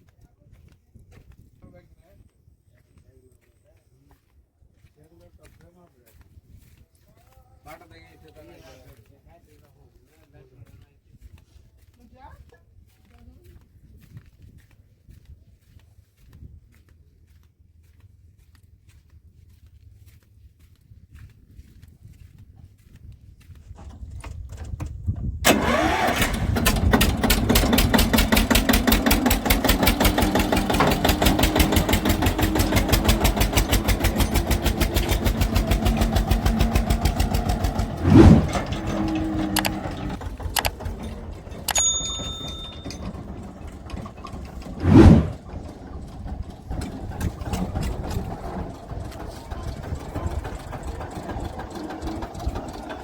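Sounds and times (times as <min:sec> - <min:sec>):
tractor diesel engine chugging: 0:23.7 - 0:53.0.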